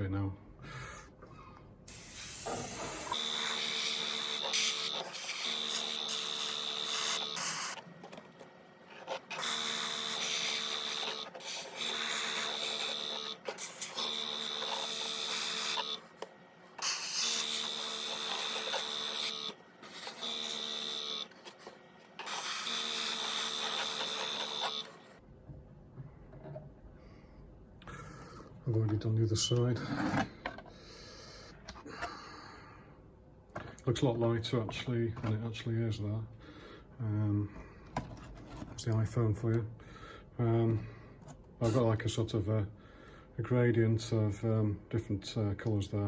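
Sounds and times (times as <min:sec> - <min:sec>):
airbrush spraying: 0:01.9 - 0:03.2
compressor humming: 0:01.9 - 0:25.2.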